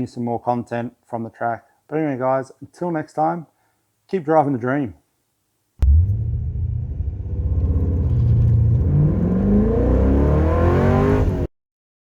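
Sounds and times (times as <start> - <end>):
car engine accelerating: 5.8 - 11.5.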